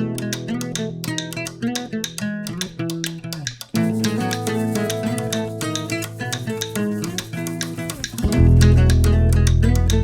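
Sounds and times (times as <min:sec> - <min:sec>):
plucked guitar music: 0:00.0 - 0:10.0
steady percussive beat: 0:03.7 - 0:10.0.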